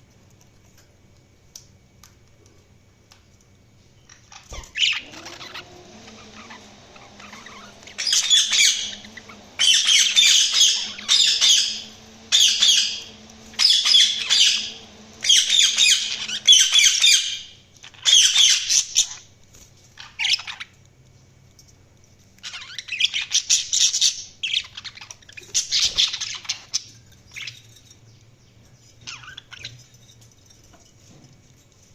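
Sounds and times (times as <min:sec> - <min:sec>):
budgerigars chirping and chattering: 0:04.1 - 0:19.2, 0:20.0 - 0:20.7, 0:22.4 - 0:27.6, 0:29.0 - 0:29.8.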